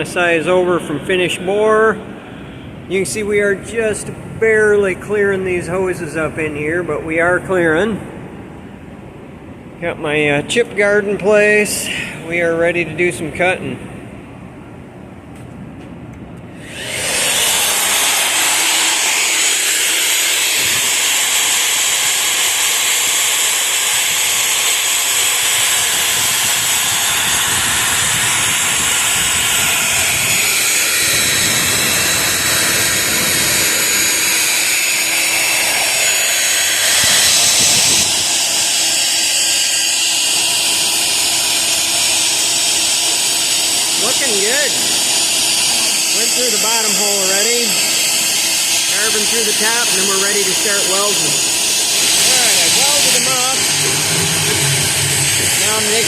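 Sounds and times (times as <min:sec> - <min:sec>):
boring machine hissing: 0:16.6 - 0:56.0.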